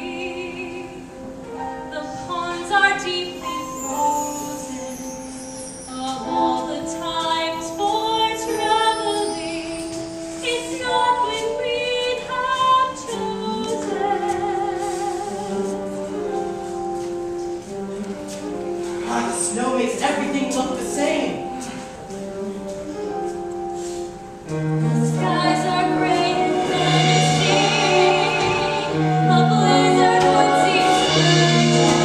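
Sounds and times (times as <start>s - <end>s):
instrumental accompaniment: 0.0s - 32.0s
female voices singing: 24.9s - 32.0s.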